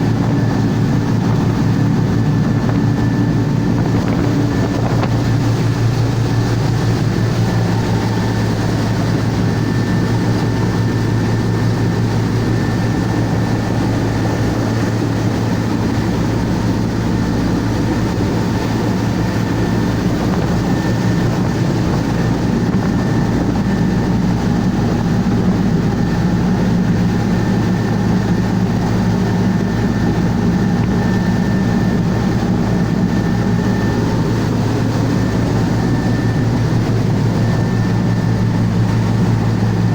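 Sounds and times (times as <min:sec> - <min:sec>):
thin high whine: 0:00.0 - 0:24.4
diesel engine drone: 0:00.0 - 0:39.9.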